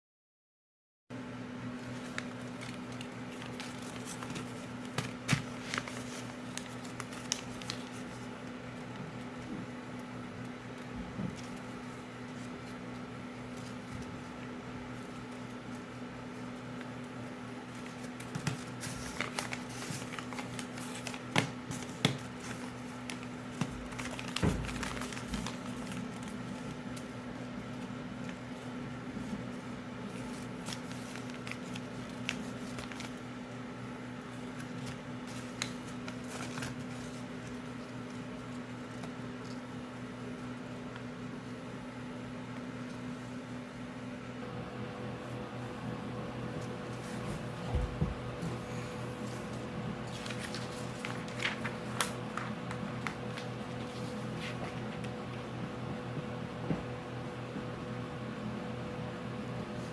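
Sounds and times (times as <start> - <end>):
steady low hum: 1.2 - 59.9
paper crinkling and tapping: 1.8 - 33.6, 34.3 - 39.7, 49.2 - 55.5.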